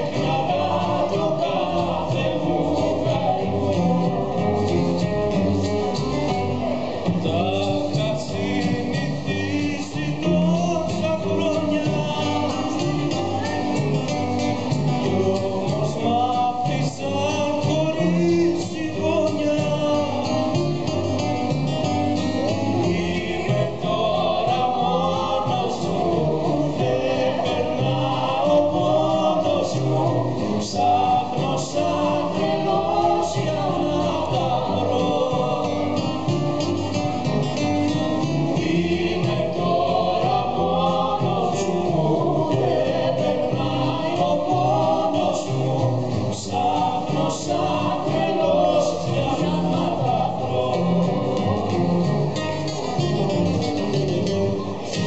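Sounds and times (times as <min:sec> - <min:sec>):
person singing: 0:06.8 - 0:21.2, 0:22.2 - 0:36.9.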